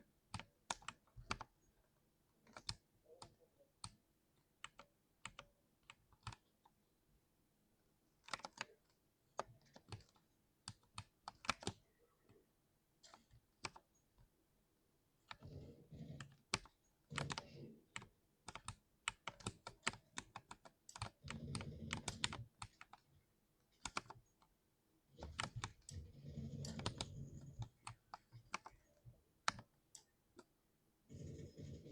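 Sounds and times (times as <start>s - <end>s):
keyboard keys clicking: 0.3s - 1.7s, 2.4s - 6.8s, 8.2s - 12.4s, 15.2s - 23.1s, 23.7s - 24.5s, 25.2s - 30.5s.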